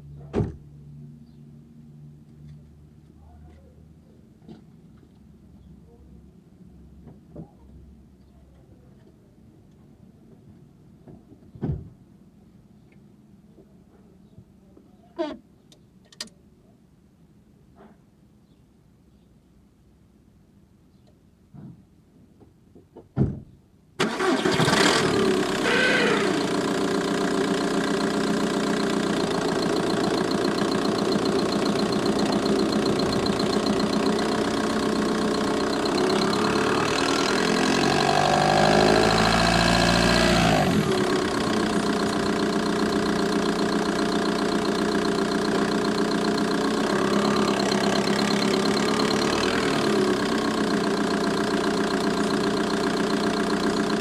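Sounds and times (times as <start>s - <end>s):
diesel engine cranking and starting: 24.0s - 54.0s
diesel engine idling with clatter: 24.0s - 54.0s
engine bay ticking: 26.4s - 37.8s, 40.8s - 54.0s.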